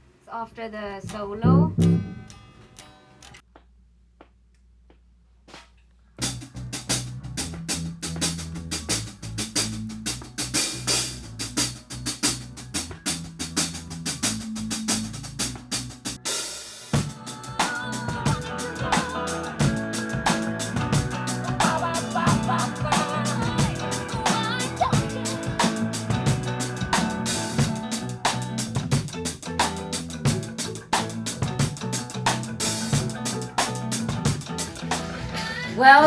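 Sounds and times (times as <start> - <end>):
bass line: 6.2 - 16.2, 17.0 - 36.0
drum kit groove: 6.2 - 36.0
pitched instruments: 16.2 - 36.0.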